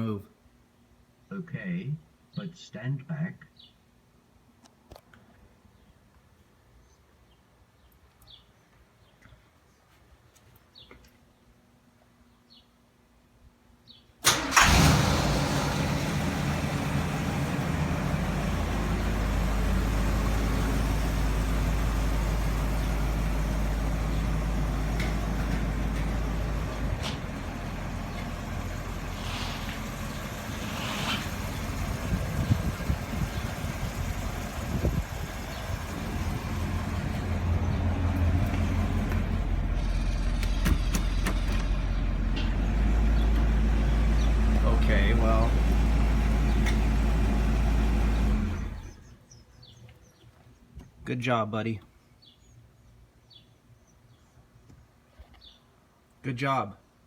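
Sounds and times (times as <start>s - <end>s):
car engine running: 14.6s - 49.1s.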